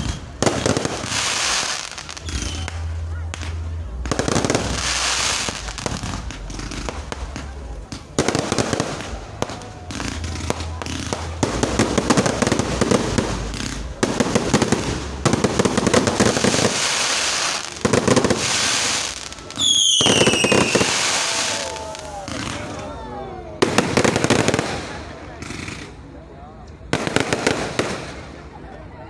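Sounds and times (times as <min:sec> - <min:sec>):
falling firework whistle: 0:00.0 - 0:02.9, 0:18.6 - 0:22.8
fireworks crackling and popping: 0:00.0 - 0:28.8.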